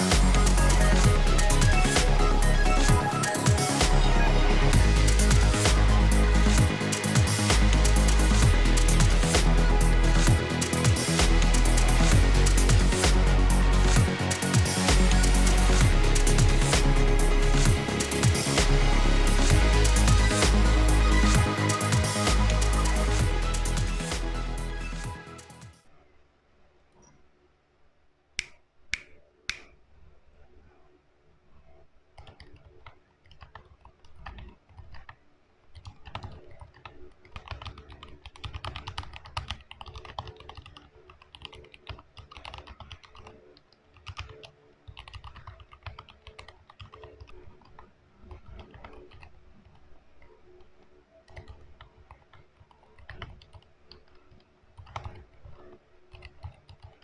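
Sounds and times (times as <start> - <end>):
keyboard typing: 35.8 - 47.8, 56.1 - 57.0.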